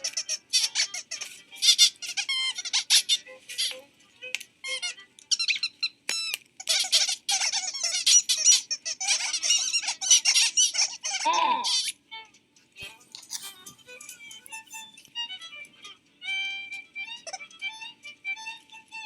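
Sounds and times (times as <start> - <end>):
light music: 0.0 - 11.0, 11.9 - 19.0
cartoon birds squeaky chattering: 4.7 - 12.0, 12.8 - 15.0.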